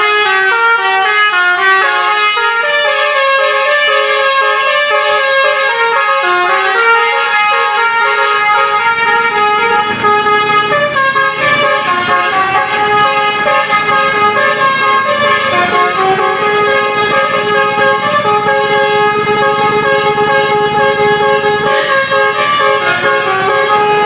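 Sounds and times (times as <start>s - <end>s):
bus horn playing a melody: 0.0s - 24.0s.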